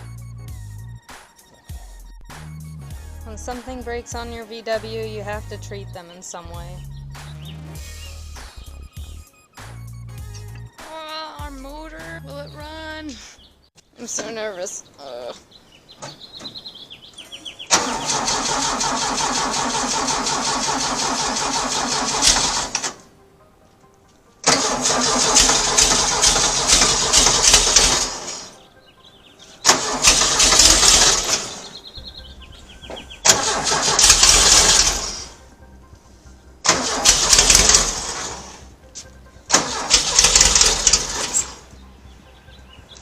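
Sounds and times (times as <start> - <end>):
engine cranking: 17.6 - 23.0, 24.4 - 28.6, 29.6 - 35.4, 36.6 - 38.7, 39.5 - 41.7.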